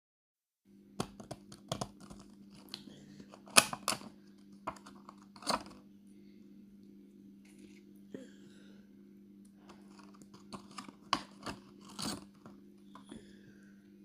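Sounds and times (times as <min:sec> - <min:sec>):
packaging clicks and taps: 0:01.0 - 0:05.8, 0:09.7 - 0:12.6
packaging crinkling: 0:09.7 - 0:12.5.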